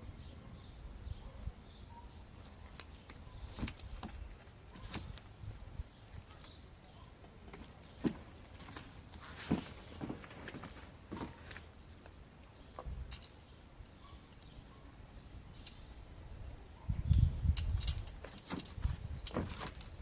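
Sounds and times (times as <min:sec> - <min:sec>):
faint bird chirps: 0:00.0 - 0:18.0
sharp clicks and knocks: 0:17.1 - 0:20.0.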